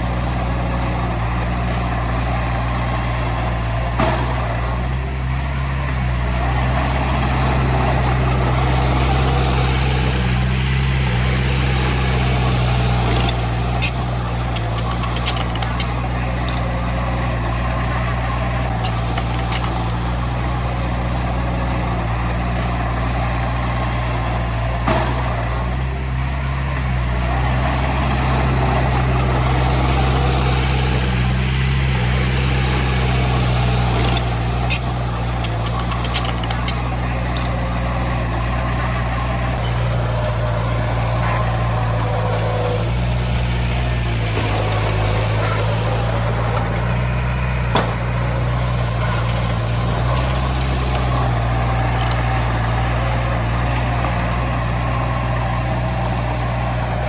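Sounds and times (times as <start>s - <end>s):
heavy diesel engine running: 0.0s - 57.0s
sharp metal knocks and clanks: 5.9s - 20.7s, 28.0s - 38.7s, 39.4s - 55.3s.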